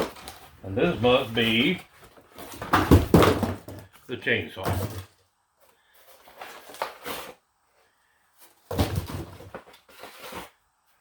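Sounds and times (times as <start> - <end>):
cardboard box rustling and knocking: 1.5 - 3.9, 8.5 - 10.5.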